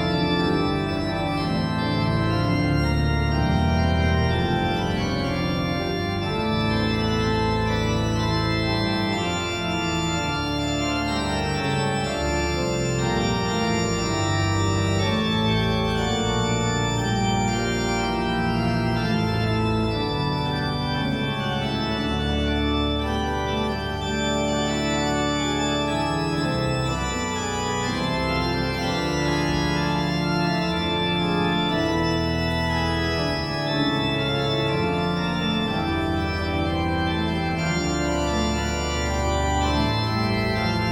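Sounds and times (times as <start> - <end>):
organ playing sustained chords: 0.0 - 40.9.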